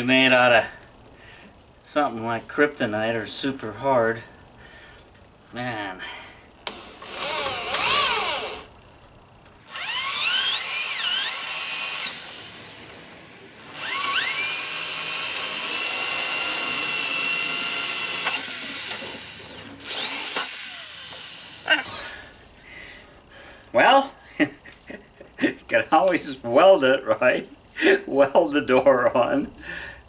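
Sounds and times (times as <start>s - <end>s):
electric drill whine: 6.6s - 8.8s, 9.6s - 21.9s.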